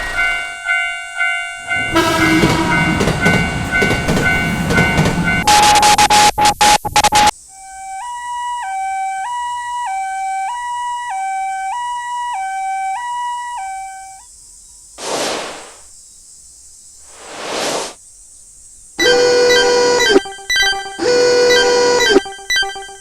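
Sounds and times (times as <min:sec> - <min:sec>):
loud chiming music: 0:00.0 - 0:05.6, 0:19.0 - 0:23.0
two-tone ambulance siren: 0:00.0 - 0:06.4, 0:07.7 - 0:14.2, 0:19.0 - 0:23.0
short whooshes: 0:15.0 - 0:15.9, 0:17.0 - 0:18.0.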